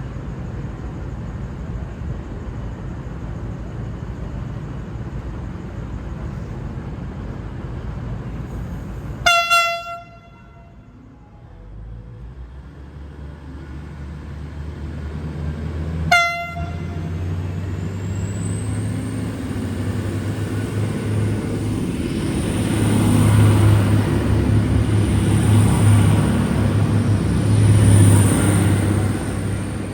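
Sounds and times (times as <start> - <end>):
train engine rumble: 0.0 - 29.9
train horn toot: 9.2 - 11.0, 16.1 - 17.3
high whine: 16.1 - 29.9.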